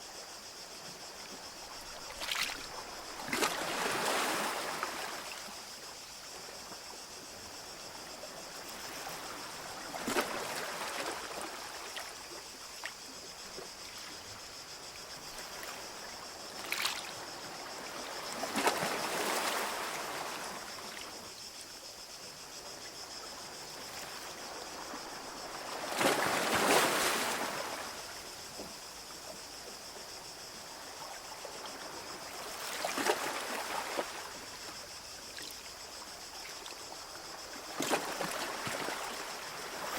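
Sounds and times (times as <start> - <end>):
small waves washing up beach: 2.0 - 5.6, 23.6 - 28.5.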